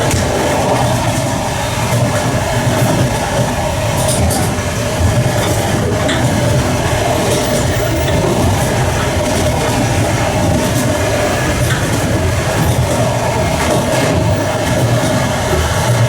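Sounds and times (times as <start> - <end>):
train wheels rumbling on rails: 0.0 - 16.0.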